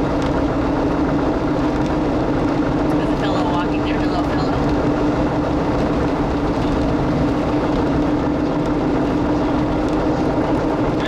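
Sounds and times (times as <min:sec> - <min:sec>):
constant car hum: 0:00.0 - 0:11.0
road and wind noise: 0:00.0 - 0:11.0.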